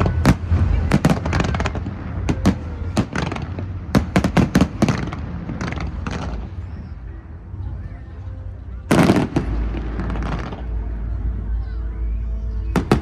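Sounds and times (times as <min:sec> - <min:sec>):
fireworks bangs and crackles: 0:00.0 - 0:07.0, 0:08.9 - 0:11.3, 0:12.7 - 0:13.0
low rumble: 0:00.0 - 0:13.0.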